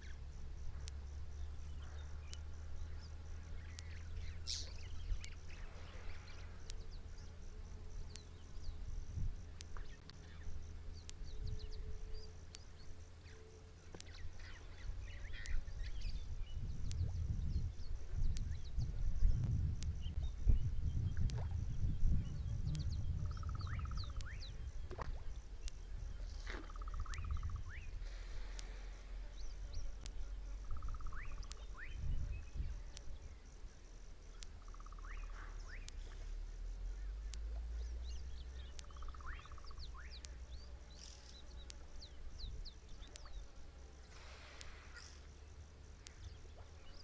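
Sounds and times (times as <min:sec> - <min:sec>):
low wind rumble: 0:00.0 - 0:13.4, 0:14.0 - 0:34.9
faint clicks: 0:00.0 - 0:16.2, 0:16.8 - 0:17.3, 0:21.1 - 0:21.6, 0:22.6 - 0:47.0.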